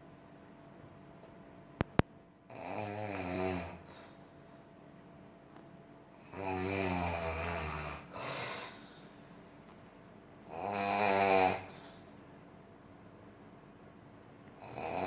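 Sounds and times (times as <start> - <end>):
person snoring: 2.5 - 4.1, 6.2 - 8.8, 10.5 - 12.0, 14.6 - 15.0.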